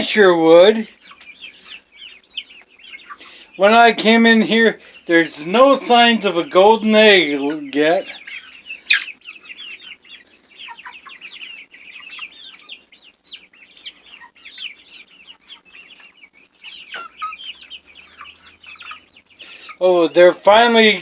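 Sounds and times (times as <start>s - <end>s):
chicks peeping and chirping: 0.0s - 21.0s.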